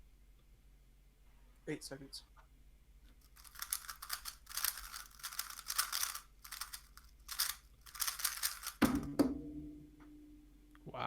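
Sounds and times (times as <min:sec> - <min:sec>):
speed cube clicking and rattling: 0:03.2 - 0:08.8
cube knock: 0:08.5 - 0:09.4.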